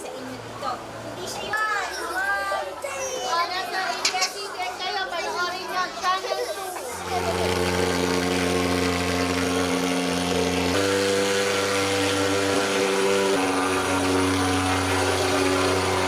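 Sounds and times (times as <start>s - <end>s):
fogging machine drone: 6.9s - 16.0s.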